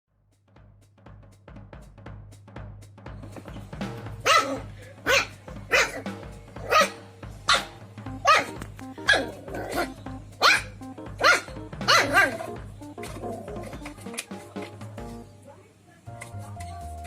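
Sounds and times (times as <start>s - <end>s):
music with steady beat: 0.2s - 15.5s
puppy barking: 4.2s - 12.6s.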